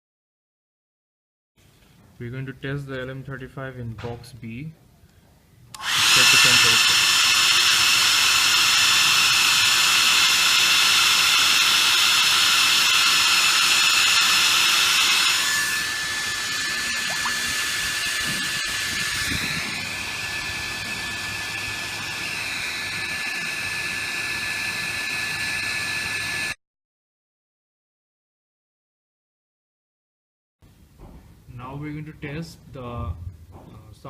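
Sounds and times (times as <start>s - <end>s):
hot-air blower whine: 5.7s - 26.6s.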